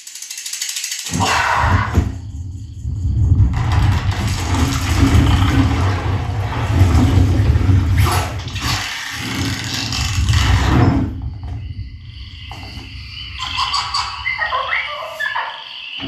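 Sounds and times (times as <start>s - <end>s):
dense sound effect with deep bass: 1.6s - 8.8s.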